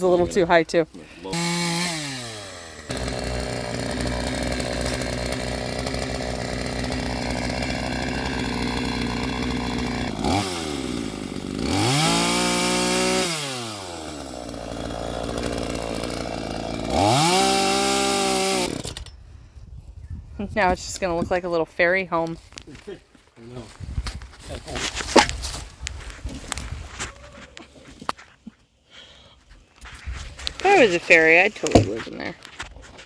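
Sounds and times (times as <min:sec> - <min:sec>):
chainsaw cutting wood: 0:00.0 - 0:19.2, 0:30.4 - 0:32.6.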